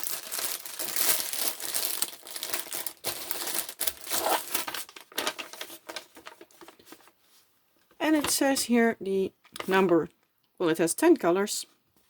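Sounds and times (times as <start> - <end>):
packaging rustling and crackling: 0.0 - 7.2.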